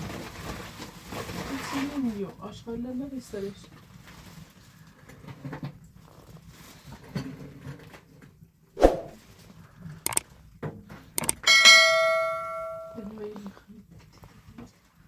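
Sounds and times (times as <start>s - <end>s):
sharp clicks: 11.2s - 11.4s
metal object ringing: 11.4s - 13.1s.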